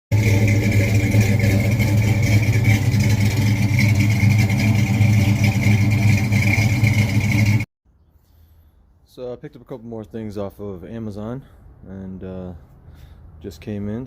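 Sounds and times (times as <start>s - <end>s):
vehicle engine running loudly: 0.1s - 7.7s.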